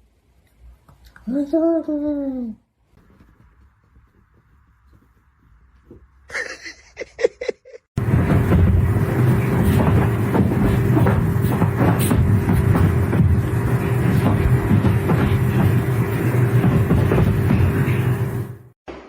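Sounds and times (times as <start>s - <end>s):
mechanical rumble with hum: 8.0s - 18.8s.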